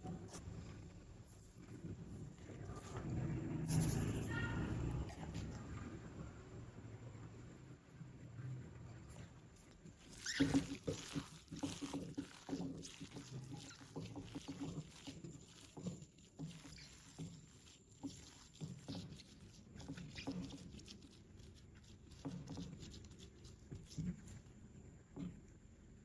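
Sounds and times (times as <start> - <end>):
food being handled and prepared: 8.9 - 25.8.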